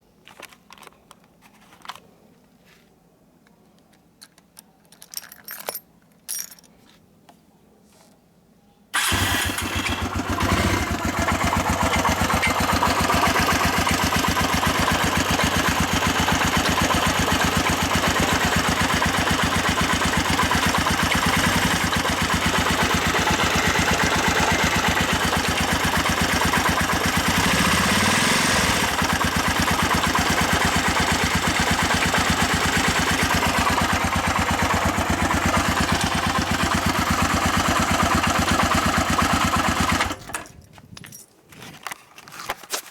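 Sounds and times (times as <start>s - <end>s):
motorcycle engine running: 9.0s - 40.2s.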